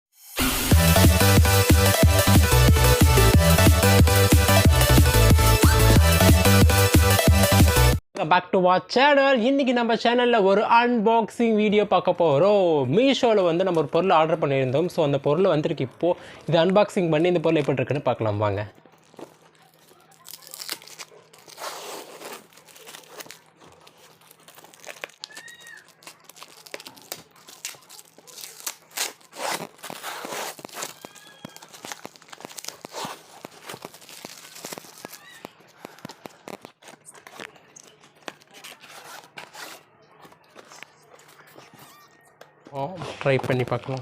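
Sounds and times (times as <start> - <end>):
packaging crinkling and tearing: 18.7 - 42.2, 43.0 - 44.0.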